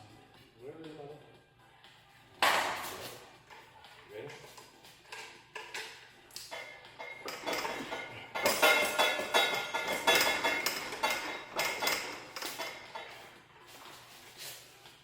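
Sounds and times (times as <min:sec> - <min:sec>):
metal clanking and clinking: 0:05.0 - 0:13.3.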